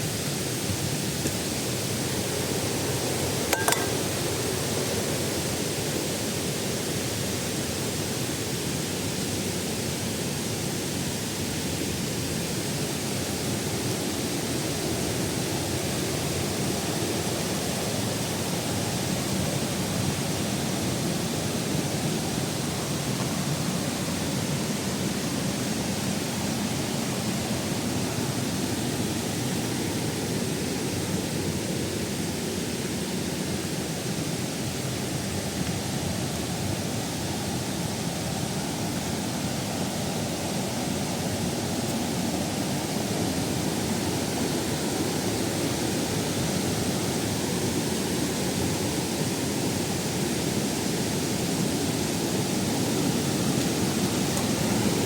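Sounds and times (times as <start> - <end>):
waterfall rushing: 0.0 - 55.0.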